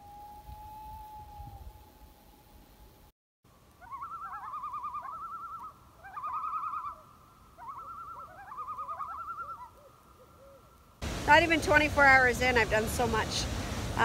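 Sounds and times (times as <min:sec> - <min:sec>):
loons tremolo calls: 0:03.8 - 0:11.0.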